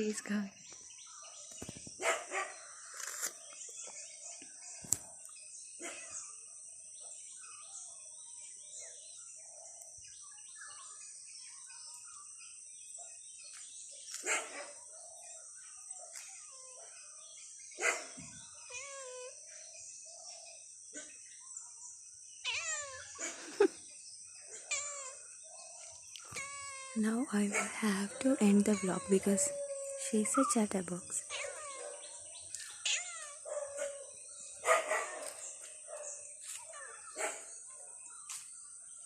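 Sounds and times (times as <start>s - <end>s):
birds chirping: 0.0s - 39.0s
dogs barking: 2.0s - 2.6s, 14.1s - 14.9s, 17.8s - 18.2s, 27.4s - 28.4s, 31.4s - 32.3s, 33.3s - 38.0s
cat meowing: 18.7s - 19.4s, 22.4s - 23.2s, 24.7s - 25.2s, 26.2s - 27.0s, 31.3s - 32.0s, 32.7s - 34.0s.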